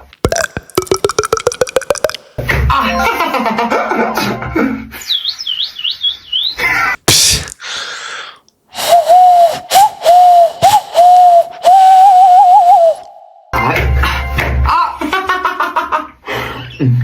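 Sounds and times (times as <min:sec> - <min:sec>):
beatboxer hiss: 0:07.1 - 0:07.8
beatboxer bird-like whistle: 0:08.8 - 0:13.1
pulsing whistled tone: 0:08.8 - 0:13.6.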